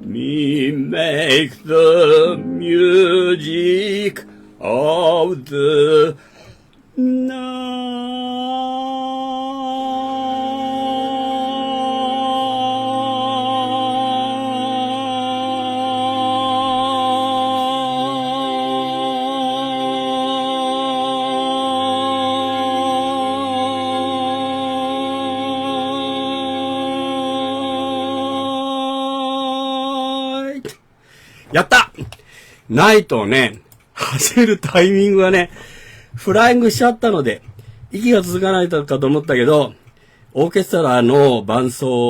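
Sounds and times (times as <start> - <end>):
man singing long held note: 0.0 - 6.4, 7.0 - 30.7.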